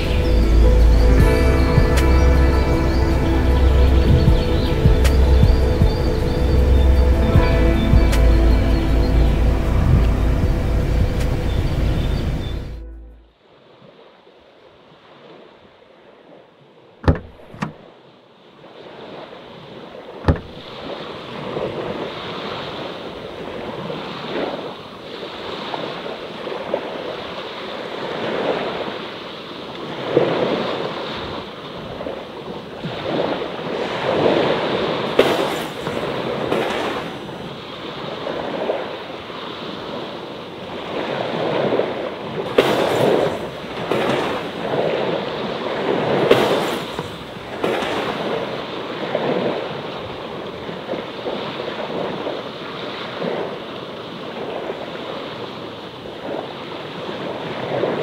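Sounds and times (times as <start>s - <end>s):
small waves washing on shore: 0.0s - 58.0s.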